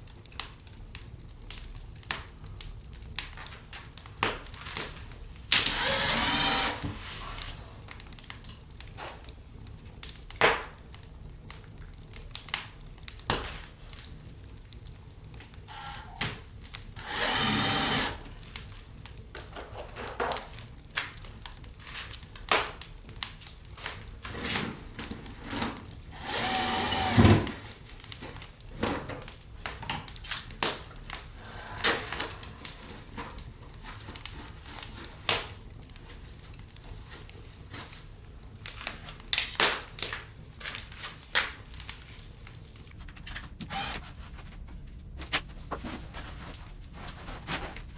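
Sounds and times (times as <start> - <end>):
power drill running: 5.7 - 6.8, 15.7 - 16.1, 17.0 - 18.3, 26.2 - 27.6, 43.6 - 44.0.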